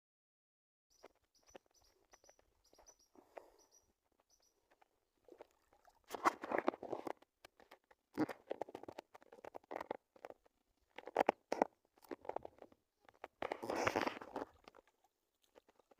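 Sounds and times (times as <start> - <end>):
small bird chirping: 0.9 - 4.8.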